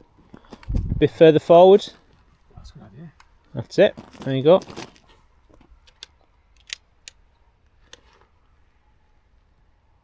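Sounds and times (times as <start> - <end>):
rifle handling clicks: 5.8 - 7.2.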